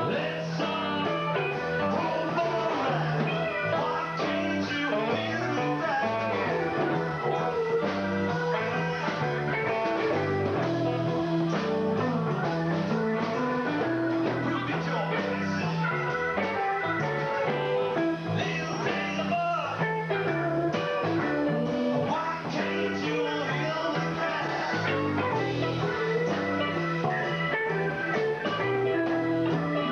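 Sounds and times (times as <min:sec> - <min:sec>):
bass line: 0:00.0 - 0:29.9
drums: 0:00.0 - 0:29.9
electric guitar lines: 0:00.0 - 0:29.9.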